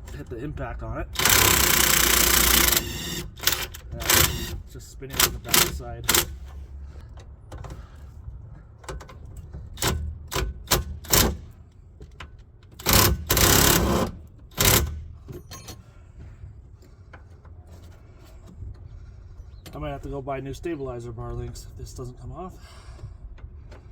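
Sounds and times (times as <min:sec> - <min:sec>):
impact wrench bursts: 0:01.1 - 0:06.5, 0:12.8 - 0:15.1.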